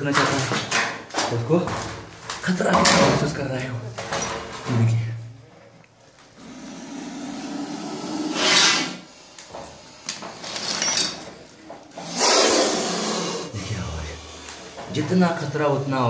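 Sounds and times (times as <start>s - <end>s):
snake hissing: 6.4s - 10.7s, 12.0s - 14.9s.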